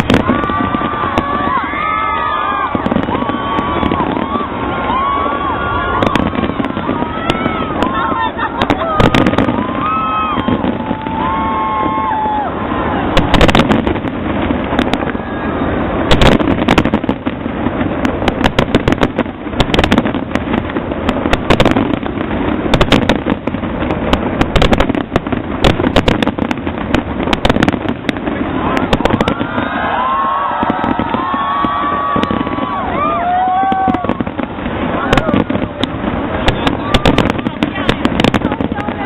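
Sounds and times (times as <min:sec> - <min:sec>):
crowd voices: 0:00.0 - 0:16.1, 0:28.1 - 0:39.0
fireworks bangs and crackles: 0:00.0 - 0:39.0
steady rumbling wash: 0:00.0 - 0:39.0.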